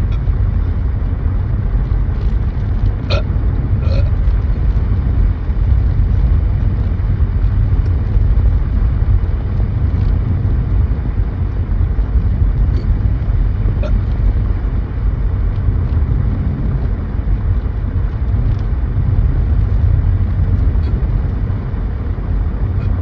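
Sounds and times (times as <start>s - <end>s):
car cabin road and engine rumble: 0.0s - 23.0s
short burps: 3.0s - 4.3s.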